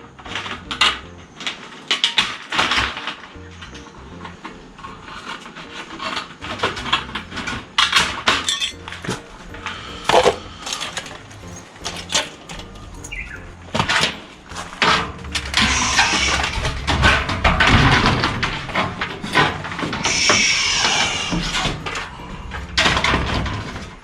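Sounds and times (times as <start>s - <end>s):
metallic clinks: 8.4s - 9.2s, 10.6s - 14.6s.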